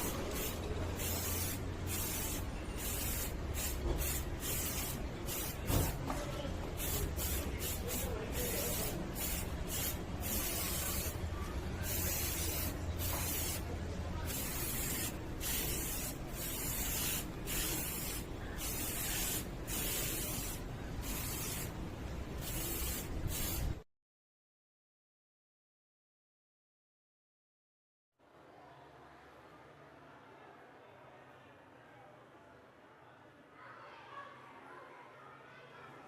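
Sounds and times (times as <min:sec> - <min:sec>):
spray paint hissing in bursts: 0:00.0 - 0:06.0, 0:06.7 - 0:11.2, 0:11.8 - 0:21.8, 0:22.4 - 0:23.8.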